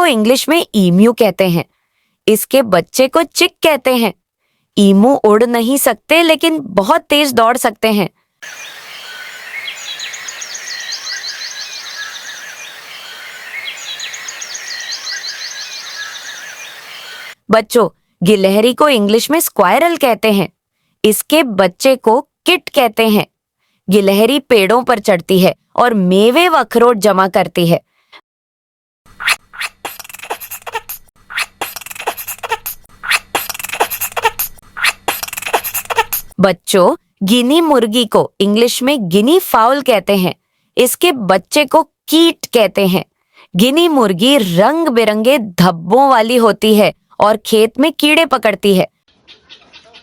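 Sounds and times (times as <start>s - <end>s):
outdoor background noise: 0.0s - 23.3s
songbird chirps and trills: 8.4s - 17.4s
harsh animal calls: 29.2s - 36.3s, 49.1s - 50.0s.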